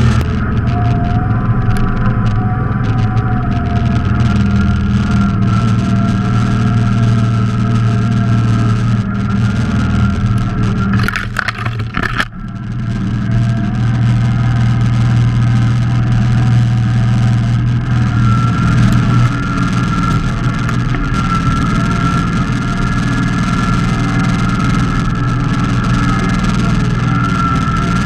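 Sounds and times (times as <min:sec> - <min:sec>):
garden tractor engine running: 0:00.0 - 0:28.0
sharp clicks: 0:10.0 - 0:12.8.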